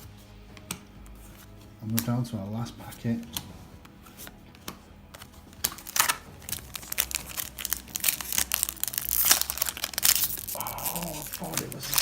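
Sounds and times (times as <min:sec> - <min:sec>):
foil wrapper tearing and crinkling: 0:05.2 - 0:12.0.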